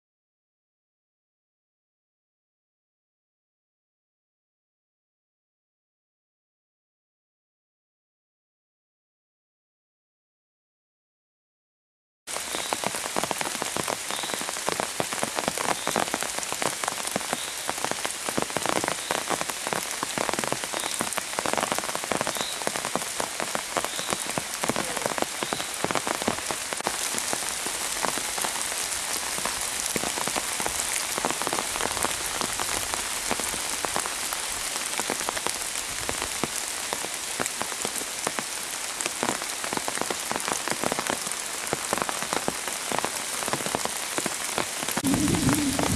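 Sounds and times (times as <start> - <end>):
heavy rain pattering: 12.3 - 45.9.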